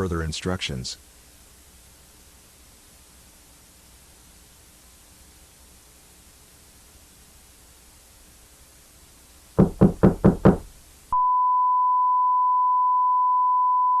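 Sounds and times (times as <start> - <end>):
faint static hiss: 0.0 - 11.2
quick knocks on a door: 9.6 - 10.7.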